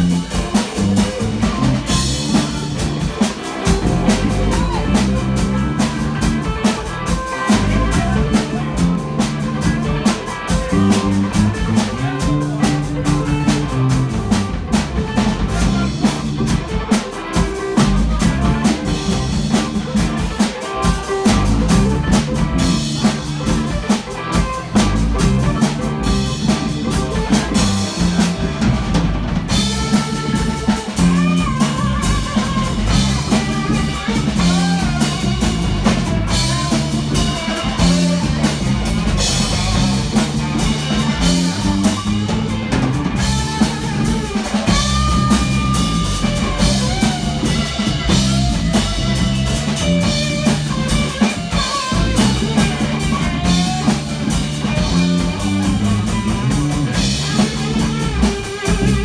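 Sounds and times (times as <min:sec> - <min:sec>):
drum hits: 0:00.0 - 0:16.8
rock band playing live: 0:00.0 - 0:59.0.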